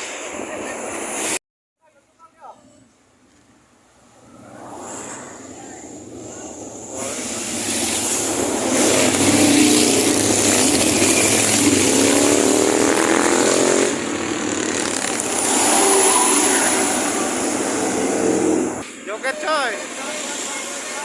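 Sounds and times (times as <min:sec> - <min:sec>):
bus engine passing: 0:03.8 - 0:18.8.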